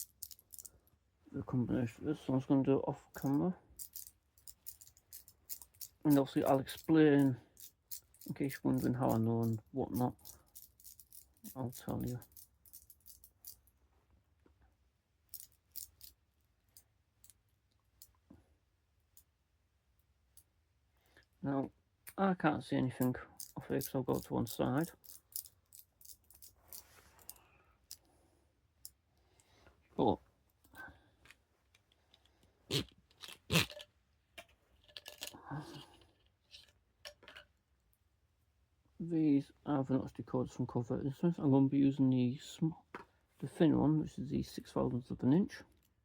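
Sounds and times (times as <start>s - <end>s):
padlock wheels clicking: 0.0s - 0.7s, 3.2s - 13.6s, 15.3s - 16.2s, 23.4s - 27.4s.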